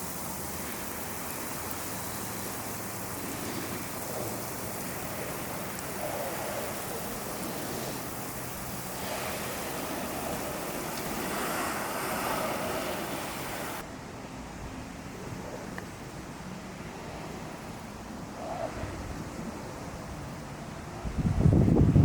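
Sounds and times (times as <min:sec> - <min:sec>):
board wheels rolling: 0:00.0 - 0:13.8
wind rushing: 0:00.0 - 0:13.8.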